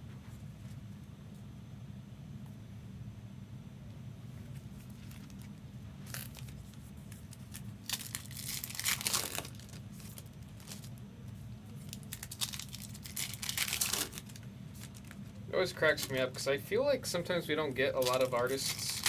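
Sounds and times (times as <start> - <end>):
foil wrappers tearing and crinkling: 4.8 - 11.0, 11.7 - 15.2, 17.7 - 19.0.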